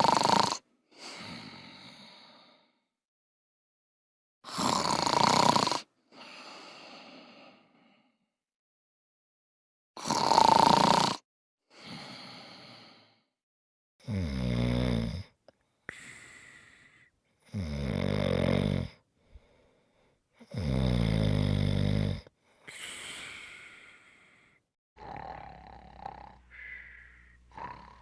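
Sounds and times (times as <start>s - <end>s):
loud rattling snoring: 0.0s - 0.6s, 4.5s - 5.9s, 10.0s - 11.2s, 14.0s - 15.3s, 17.5s - 19.0s, 20.5s - 22.2s, 25.0s - 26.6s, 27.5s - 28.0s
soft breath out: 15.8s - 17.2s, 22.4s - 24.6s, 26.3s - 28.0s.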